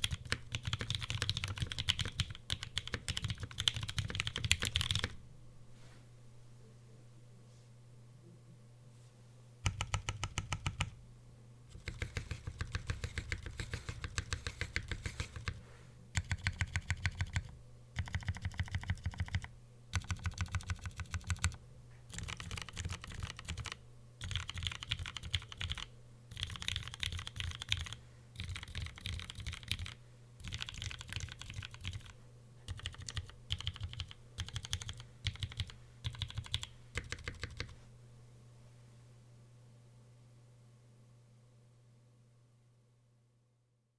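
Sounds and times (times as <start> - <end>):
mechanical keyboard typing: 0.0 - 5.2, 9.6 - 11.0, 11.7 - 15.6, 16.2 - 37.8
steady low hum: 0.0 - 43.9.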